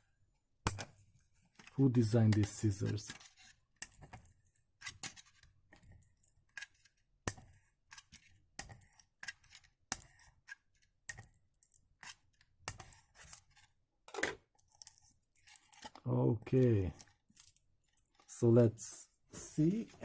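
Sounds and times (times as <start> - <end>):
scissors scraping plastic: 0.8 - 16.0.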